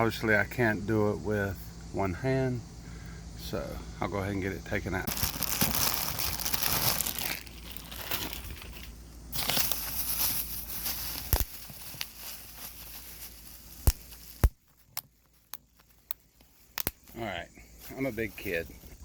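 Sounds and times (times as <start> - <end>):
bubble wrap popping: 5.1 - 17.2
plastic packaging crinkling: 5.1 - 17.2.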